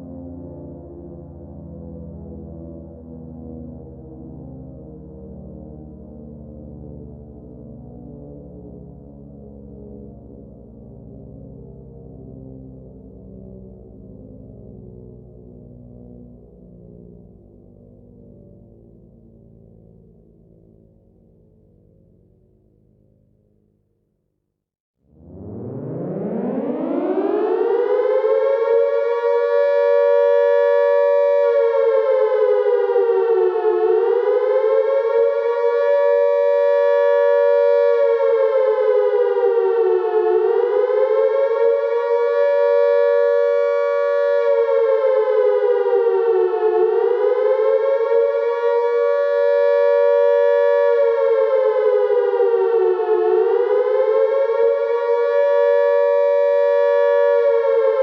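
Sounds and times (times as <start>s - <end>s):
air raid siren wailing: 0.0s - 22.4s, 25.0s - 58.0s.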